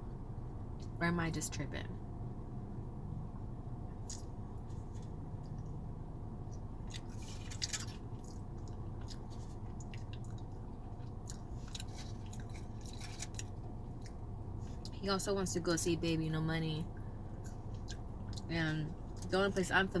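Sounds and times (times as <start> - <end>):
steady low hum: 0.0 - 20.0
person chewing food: 6.5 - 14.9, 17.3 - 18.5.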